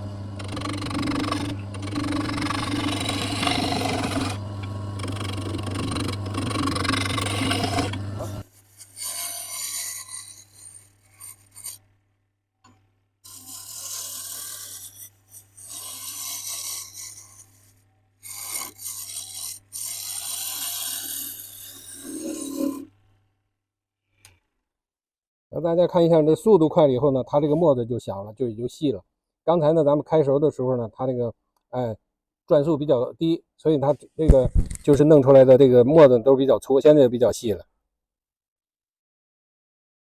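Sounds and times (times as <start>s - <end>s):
lathe motor hum: 0.0s - 10.0s
lathe tool scraping wood: 0.0s - 11.8s, 13.3s - 22.9s.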